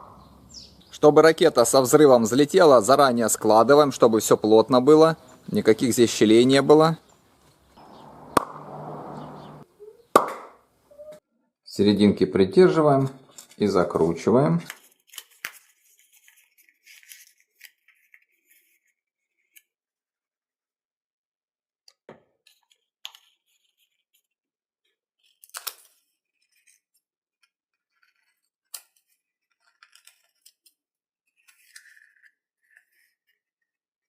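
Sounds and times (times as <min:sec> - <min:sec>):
paper crinkling: 0:14.6 - 0:19.7, 0:27.8 - 0:33.4.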